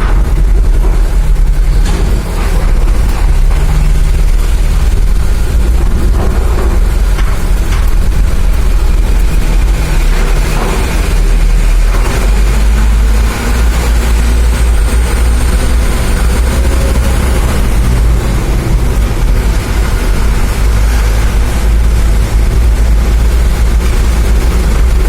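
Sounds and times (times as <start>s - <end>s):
low rumble of heavy engines: 0.0s - 25.0s.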